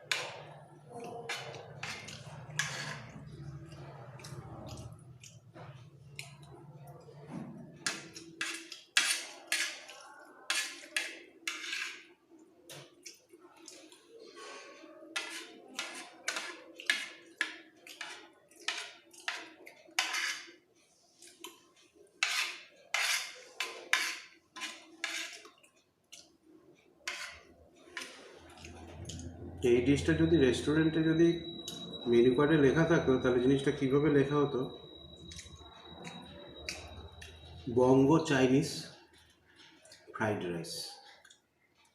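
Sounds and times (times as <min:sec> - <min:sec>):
spoon scraping a plate: 0:00.0 - 0:05.0, 0:07.8 - 0:12.1, 0:14.3 - 0:20.6, 0:22.2 - 0:25.6, 0:27.0 - 0:29.1.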